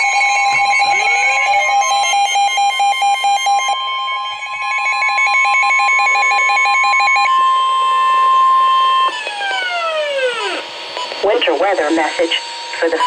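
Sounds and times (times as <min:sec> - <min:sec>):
rapid electronic beeps: 0:00.0 - 0:03.8.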